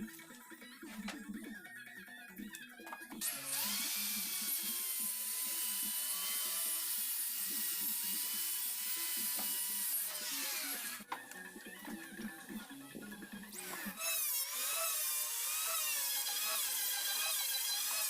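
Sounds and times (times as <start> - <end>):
power tool on wood: 3.2 - 11.0, 13.6 - 18.0.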